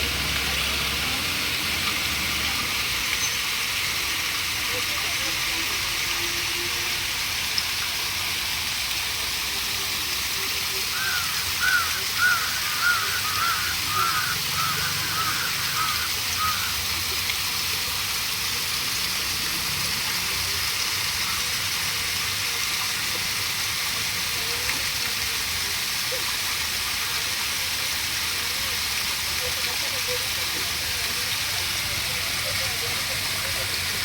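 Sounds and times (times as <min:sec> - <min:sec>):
flowing water: 0:00.0 - 0:34.0
bird calling: 0:11.0 - 0:16.7.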